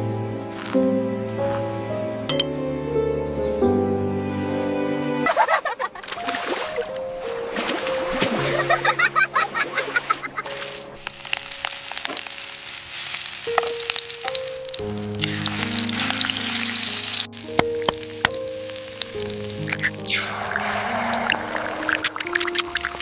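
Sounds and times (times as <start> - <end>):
soft ambient music: 0.0 - 23.0
crackling hiss with clicks: 11.0 - 20.2.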